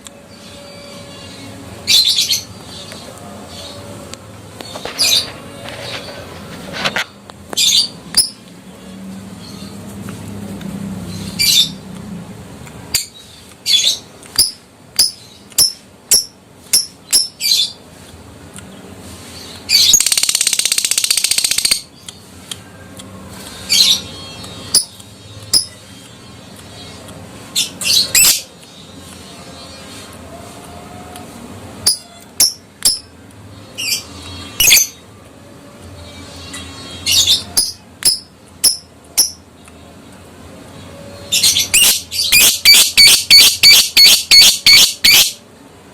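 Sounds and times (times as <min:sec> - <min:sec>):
lovebird chirping and calling: 0:19.7 - 0:21.9, 0:23.6 - 0:25.8, 0:26.8 - 0:28.5, 0:31.8 - 0:33.1, 0:33.8 - 0:35.0, 0:36.2 - 0:39.4, 0:41.2 - 0:45.4
rapid chattering bird trill: 0:19.9 - 0:21.9, 0:41.7 - 0:45.4.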